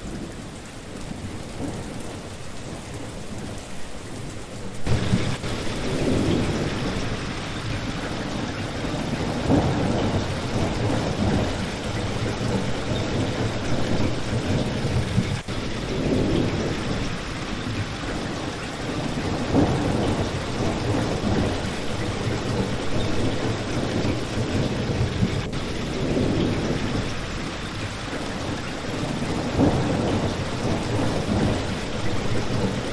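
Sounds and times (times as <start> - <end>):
steady rain pouring: 0.0 - 32.9
distant thunder rumbles: 4.8 - 32.9.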